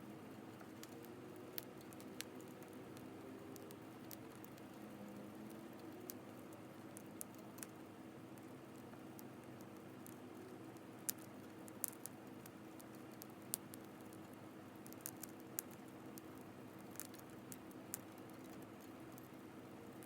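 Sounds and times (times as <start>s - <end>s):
soft steady hiss: 0.0s - 20.0s.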